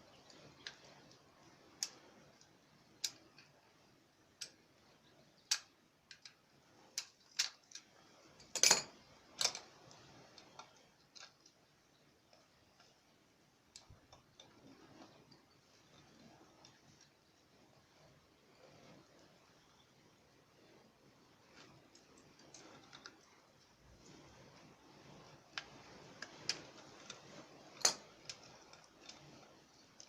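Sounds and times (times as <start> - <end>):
tools and metal parts clicking: 7.0 - 9.7.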